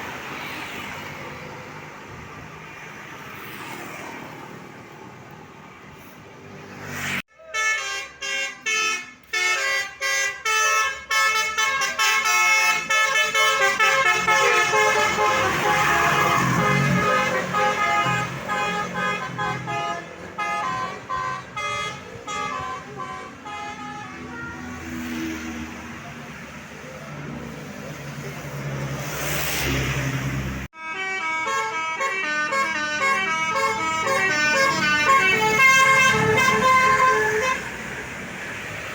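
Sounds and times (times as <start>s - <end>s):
musical bus horn tune: 7.4s - 24.8s, 30.7s - 37.9s.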